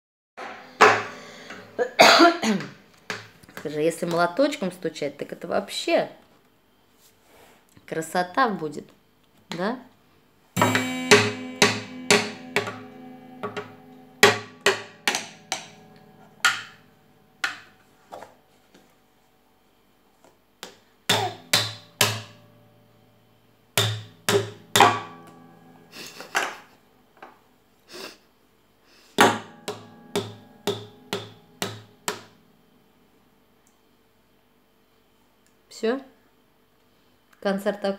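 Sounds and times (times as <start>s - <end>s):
hammer striking guitar strings: 10.6s - 18.2s, 21.1s - 26.8s, 29.2s - 33.3s.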